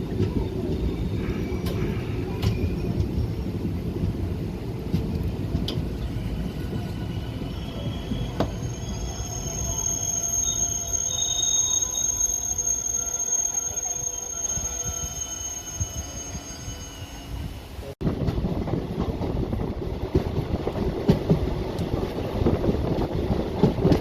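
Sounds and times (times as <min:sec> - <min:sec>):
train rumbling on rails: 0:00.0 - 0:24.0
high thin wheel squeal: 0:06.1 - 0:17.7.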